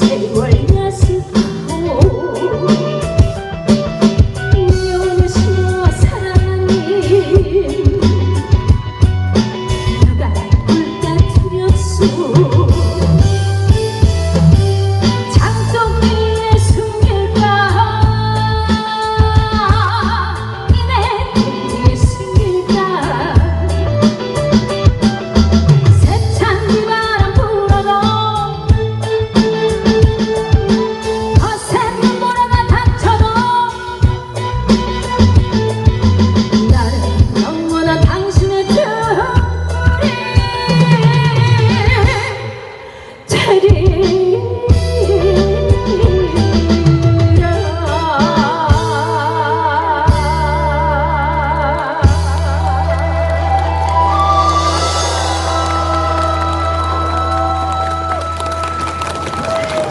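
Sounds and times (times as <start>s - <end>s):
woman singing: 0.0s - 3.1s, 4.4s - 8.8s, 9.9s - 13.4s, 15.2s - 23.8s, 26.0s - 28.9s, 31.3s - 34.2s, 36.5s - 53.1s
steady drum beat: 0.0s - 42.4s
amplified backing music: 0.0s - 59.9s
bass: 0.0s - 59.9s.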